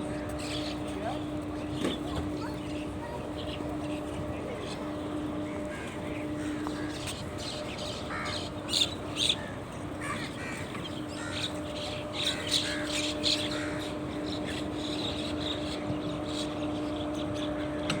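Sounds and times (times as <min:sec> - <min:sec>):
steady low hum: 0:00.0 - 0:18.0
crows cawing: 0:05.4 - 0:14.3.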